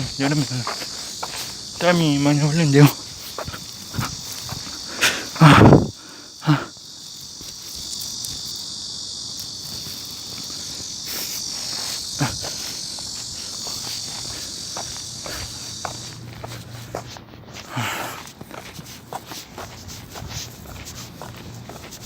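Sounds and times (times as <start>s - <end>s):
insect chorus buzzing: 0.0s - 22.0s.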